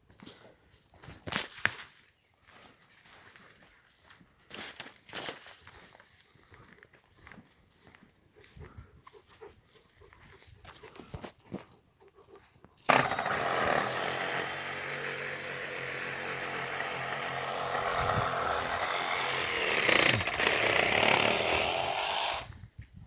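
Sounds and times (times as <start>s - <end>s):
small engine running: 12.9s - 22.5s.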